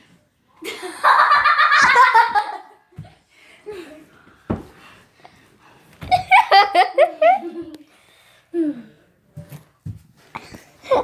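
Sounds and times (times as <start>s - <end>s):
breaths: 3.2s - 6.0s, 7.8s - 9.4s.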